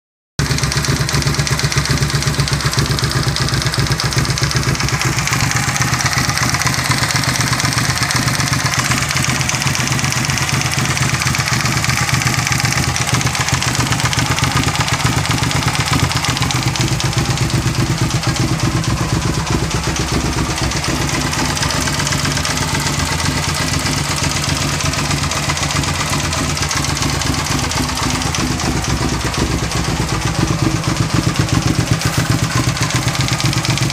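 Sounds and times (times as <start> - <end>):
engine knock: 0.4 - 33.9
motorcycle engine idling: 0.4 - 33.9.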